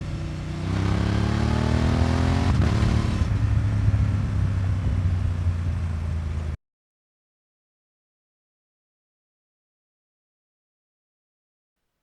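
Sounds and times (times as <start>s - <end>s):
motorcycle engine accelerating: 0.0s - 6.6s.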